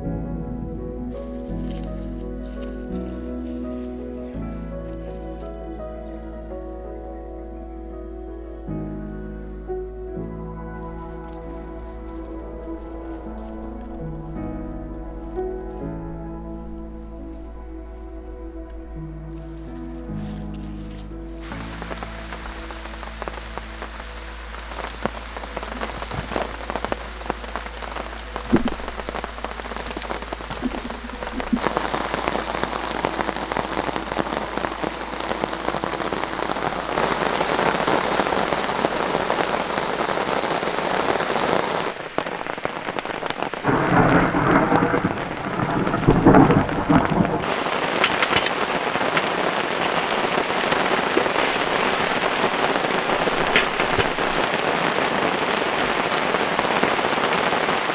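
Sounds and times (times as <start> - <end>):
low rumble of thunder: 0.0 - 3.4, 21.4 - 40.4, 43.3 - 57.9
heavy rain pouring: 0.0 - 6.6, 11.0 - 57.9.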